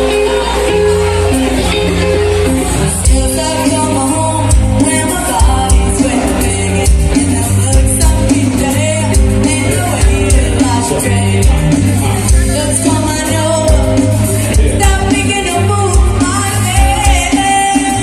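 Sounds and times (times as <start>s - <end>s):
live band playing upbeat song: 0.0s - 18.0s
person singing: 0.0s - 18.0s.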